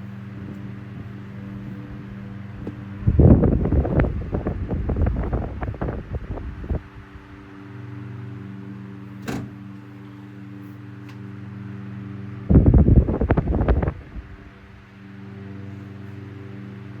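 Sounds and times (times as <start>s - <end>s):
fan airflow buffeting microphone: 0.0s - 17.0s
fan motor humming: 0.0s - 17.0s
fan click: 2.6s - 7.0s, 9.1s - 11.3s.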